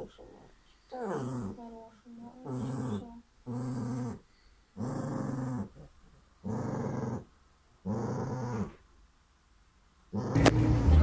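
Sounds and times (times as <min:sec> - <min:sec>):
dog growling: 0:00.0 - 0:04.2, 0:04.8 - 0:08.8, 0:10.1 - 0:10.4.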